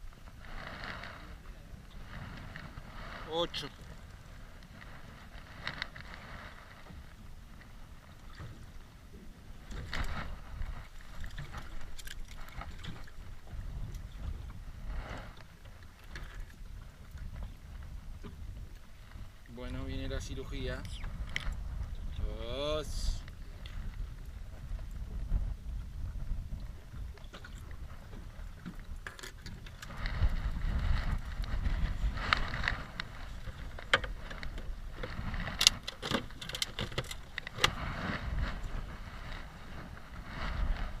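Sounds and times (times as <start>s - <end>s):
wind rumbling on microphone: 0.0s - 41.0s
small clicks and knocks: 29.0s - 29.8s, 35.5s - 37.8s.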